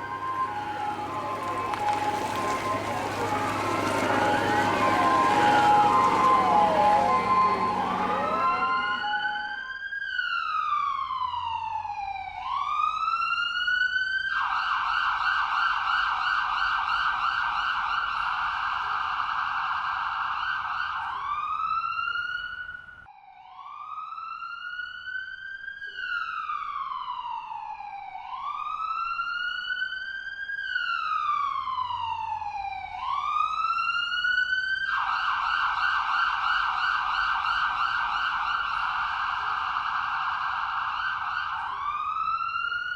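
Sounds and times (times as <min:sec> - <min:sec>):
siren rapid yelp: 0:00.0 - 0:09.8
emergency siren wailing: 0:00.0 - 0:22.6, 0:23.5 - 0:42.9.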